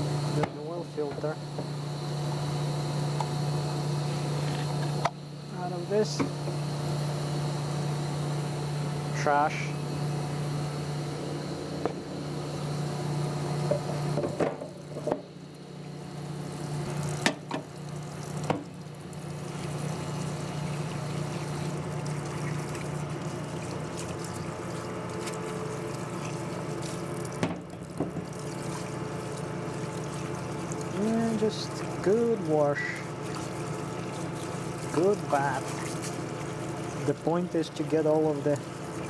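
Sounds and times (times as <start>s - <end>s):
pump humming: 0.0s - 39.0s
fluid splashing on metal: 16.9s - 39.0s.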